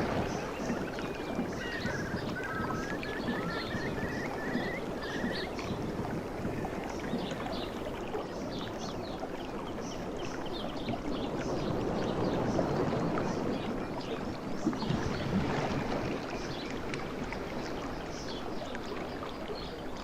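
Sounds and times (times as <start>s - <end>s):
sea surf washing: 0.0s - 7.0s.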